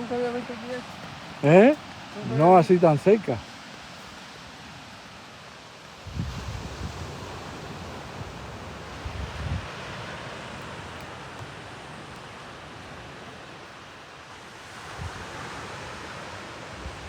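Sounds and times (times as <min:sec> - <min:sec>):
surf washing on a beach: 0:00.0 - 0:17.0
wind gust on microphone: 0:06.0 - 0:11.2, 0:14.6 - 0:17.0.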